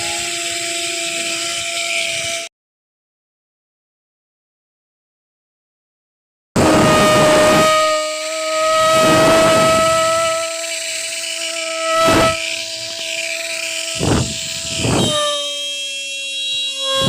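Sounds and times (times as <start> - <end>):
small electric motor whining: 0.0 - 2.5, 6.6 - 17.0
rushes of air noise: 6.6 - 15.4.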